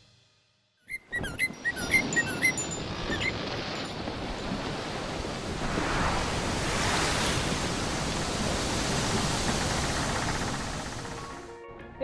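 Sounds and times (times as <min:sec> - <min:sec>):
rushing wind: 0:01.0 - 0:11.4
water noise: 0:01.0 - 0:11.4.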